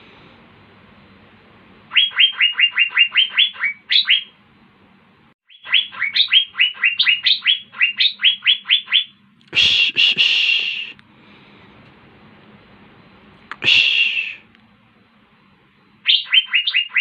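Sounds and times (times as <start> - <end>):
bird singing sharp notes: 1.9 - 4.3, 5.5 - 9.2.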